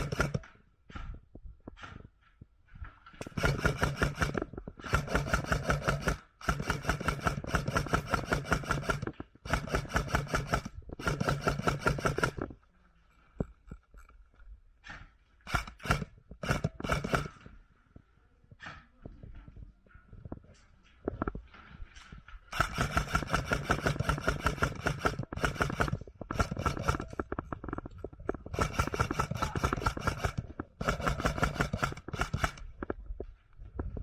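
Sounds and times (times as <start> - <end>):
airsoft rifle full-auto bursts: 0.0 - 0.4, 3.2 - 12.5, 15.5 - 17.5, 22.5 - 32.9.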